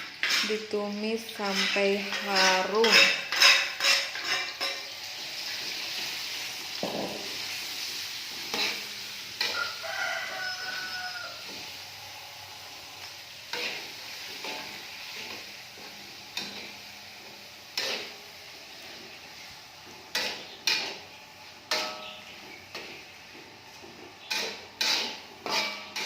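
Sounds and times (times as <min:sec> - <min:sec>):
paste sizzling in oil: 0:00.0 - 0:26.0
rooster crowing: 0:09.4 - 0:11.6.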